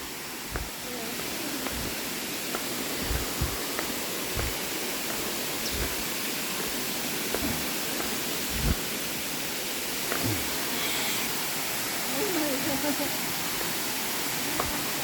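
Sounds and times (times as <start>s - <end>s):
waterfall rushing: 0.0s - 15.0s
soft low thumps: 0.4s - 9.0s.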